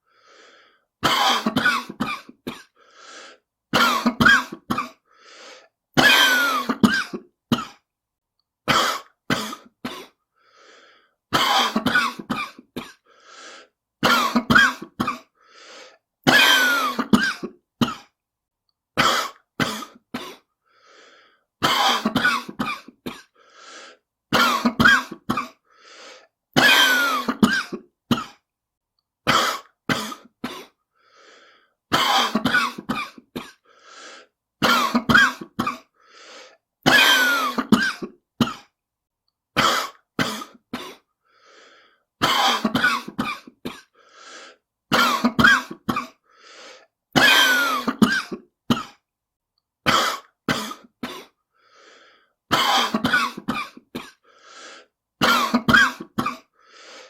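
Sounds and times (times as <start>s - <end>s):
faint breaths: 0.0s - 1.0s, 2.7s - 3.5s, 5.0s - 5.8s, 10.3s - 11.2s, 13.0s - 13.8s, 15.3s - 16.1s, 20.4s - 21.5s, 23.3s - 24.1s, 25.6s - 26.4s, 30.7s - 31.8s, 33.6s - 34.4s, 35.9s - 36.6s, 41.2s - 42.1s, 43.8s - 44.7s, 46.2s - 47.0s, 51.5s - 52.4s, 54.2s - 55.0s, 56.4s - 57.0s
person coughing harshly: 1.0s - 2.8s, 3.7s - 5.1s, 6.0s - 7.8s, 8.7s - 10.2s, 11.3s - 13.1s, 14.0s - 15.4s, 16.2s - 18.2s, 19.0s - 20.5s, 21.6s - 23.4s, 24.3s - 25.6s, 26.6s - 28.4s, 29.2s - 30.8s, 31.9s - 33.7s, 34.6s - 36.0s, 36.8s - 38.8s, 39.6s - 41.1s, 42.2s - 44.0s, 44.9s - 46.3s, 47.2s - 49.0s, 49.8s - 51.4s, 52.5s - 54.3s, 55.2s - 56.6s.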